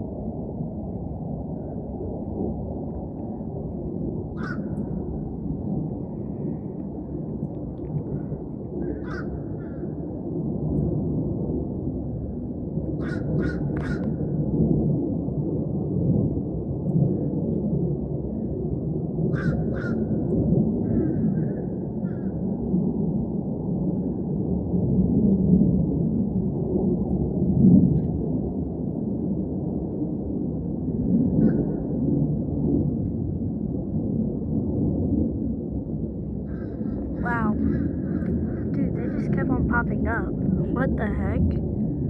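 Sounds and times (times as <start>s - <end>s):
low rumble: 0.0s - 13.0s, 22.7s - 42.0s.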